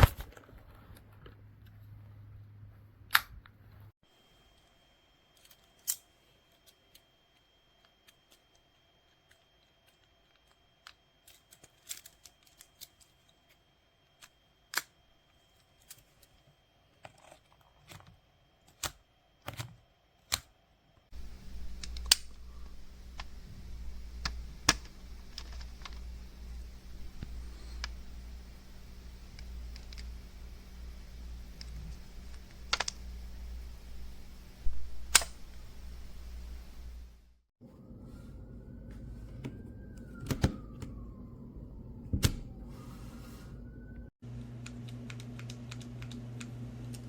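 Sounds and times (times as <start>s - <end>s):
metallic clicks and snaps: 5.4s - 7.0s, 21.2s - 37.0s
steady low hum: 21.1s - 47.0s.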